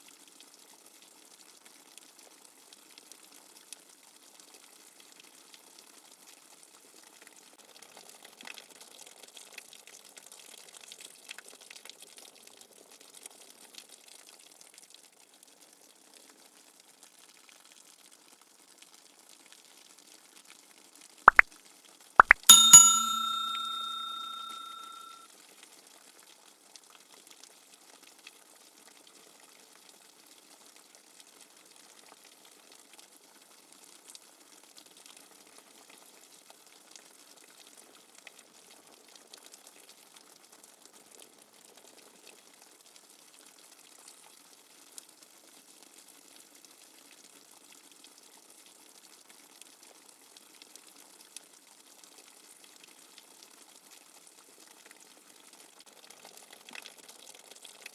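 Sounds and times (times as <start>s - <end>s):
bell-like ringing tone: 22.2s - 25.2s.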